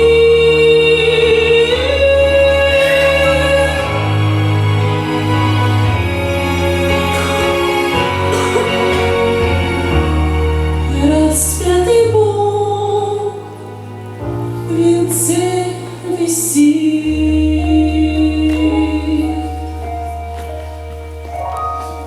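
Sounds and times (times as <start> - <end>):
woman singing a slow hymn: 0.0 - 4.8, 10.9 - 13.8, 14.5 - 20.3
backing track bass notes: 0.0 - 22.0.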